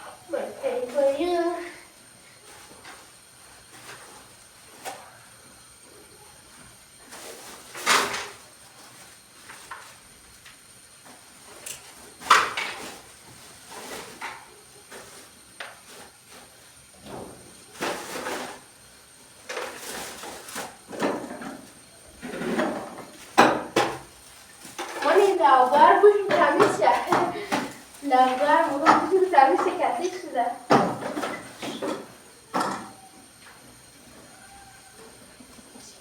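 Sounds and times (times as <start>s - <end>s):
household objects knocking and clattering: 20.9s - 24.1s, 26.2s - 27.8s, 28.7s - 29.8s, 30.6s - 33.0s.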